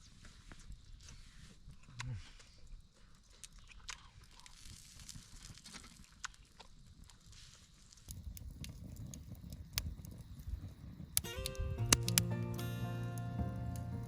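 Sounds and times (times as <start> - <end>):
low rumble: 11.5 - 14.0.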